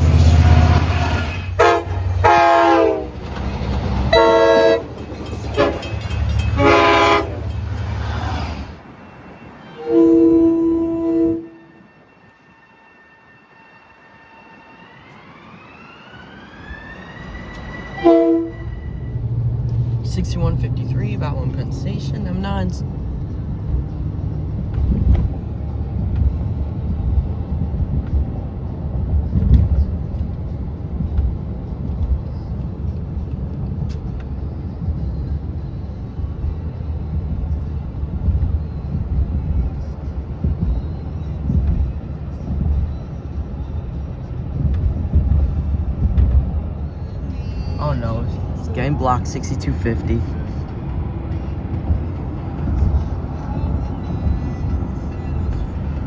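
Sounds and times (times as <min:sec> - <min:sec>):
train horn: 0:00.0 - 0:03.3, 0:04.1 - 0:07.6, 0:09.5 - 0:14.7, 0:17.3 - 0:19.2
car engine and road noise: 0:00.0 - 0:12.5, 0:13.4 - 0:56.0
train whine rising in pitch: 0:00.0 - 0:56.0.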